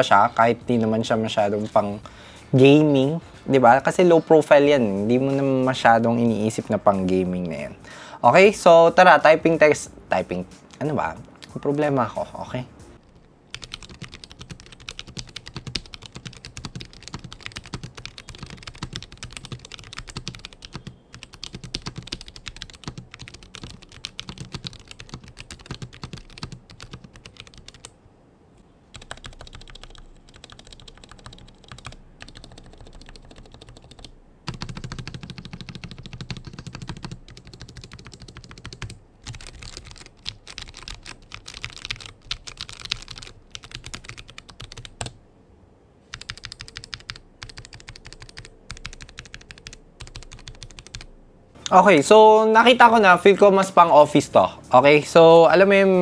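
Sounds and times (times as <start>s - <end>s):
muted keyboard typing: 13.0s - 28.0s, 28.9s - 45.2s, 46.1s - 51.1s.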